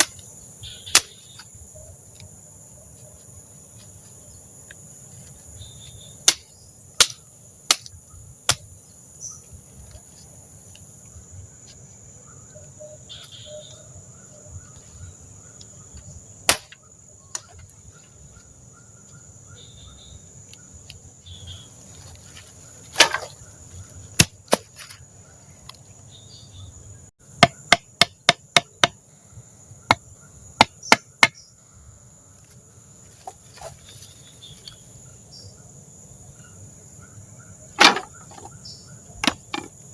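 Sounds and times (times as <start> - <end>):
insects chirring: 0.0 - 39.9
sharp wooden knocks: 27.4 - 29.0, 37.8 - 38.5.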